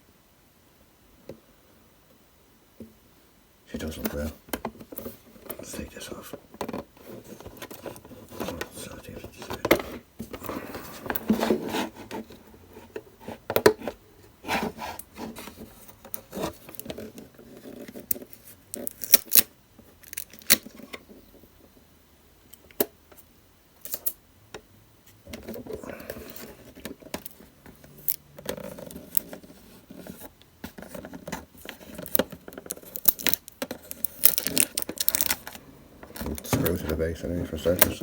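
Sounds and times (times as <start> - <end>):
packaging rustling and scraping: 3.9 - 21.1, 25.1 - 38.0.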